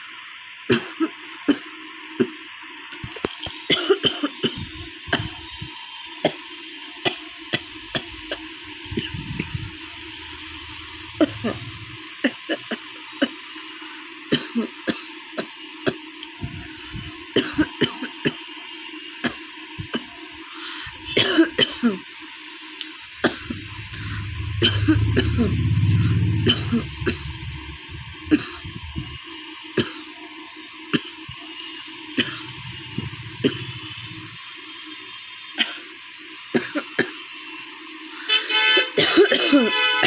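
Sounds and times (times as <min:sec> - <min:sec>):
woman coughing: 0:00.7 - 0:01.7, 0:03.7 - 0:05.4, 0:11.2 - 0:12.8, 0:14.3 - 0:15.1, 0:17.4 - 0:18.4, 0:21.2 - 0:22.0, 0:24.6 - 0:25.6, 0:28.3 - 0:28.6, 0:36.6 - 0:37.2, 0:38.5 - 0:39.9
low rumble: 0:07.6 - 0:12.2, 0:23.0 - 0:29.2, 0:32.2 - 0:34.6
woman clearing throat: 0:11.1 - 0:13.4, 0:21.2 - 0:22.0, 0:23.3 - 0:25.6, 0:28.3 - 0:28.7, 0:39.0 - 0:39.8.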